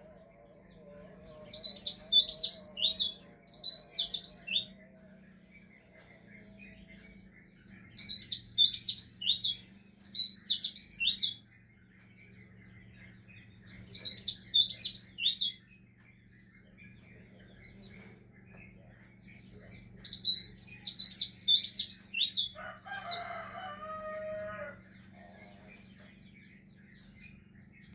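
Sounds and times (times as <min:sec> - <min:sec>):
faint steady hum: 0:00.0 - 0:21.8, 0:22.5 - 0:27.9
bird twittering: 0:01.2 - 0:27.9.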